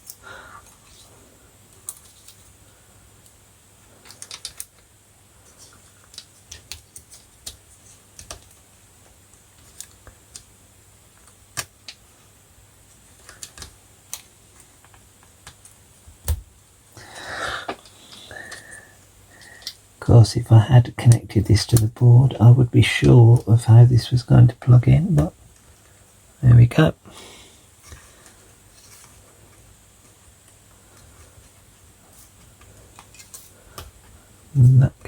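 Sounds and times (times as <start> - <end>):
small clicks of laptop parts: 4.0 - 4.9, 5.5 - 8.6, 13.1 - 15.8.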